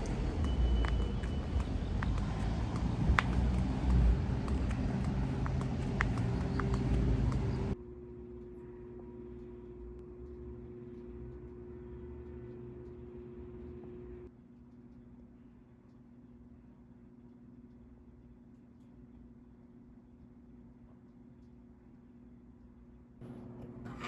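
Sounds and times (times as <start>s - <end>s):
low outdoor rumble: 0.0s - 14.3s
steady hum: 0.0s - 14.3s.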